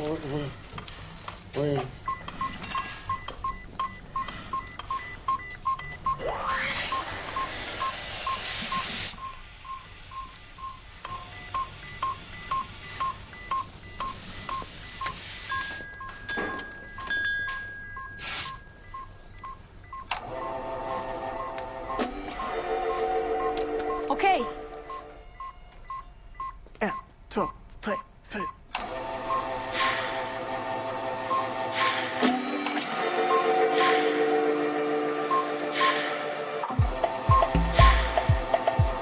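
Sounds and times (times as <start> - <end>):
short electronic beeps: 2.1 - 17.2
hiss: 6.6 - 9.2.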